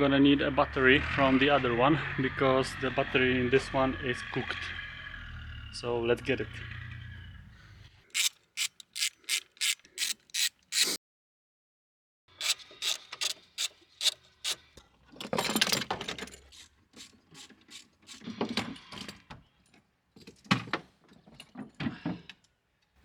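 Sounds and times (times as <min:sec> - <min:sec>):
ratchet wrench cranking: 0:08.1 - 0:11.0, 0:12.4 - 0:14.6, 0:16.4 - 0:18.2
metal parts scraping and knocking: 0:08.2 - 0:11.0, 0:12.4 - 0:14.6, 0:15.2 - 0:18.3.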